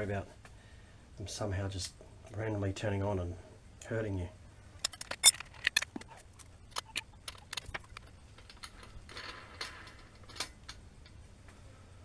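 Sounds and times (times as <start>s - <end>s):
sharp clicks and metallic clinks: 4.8s - 11.2s.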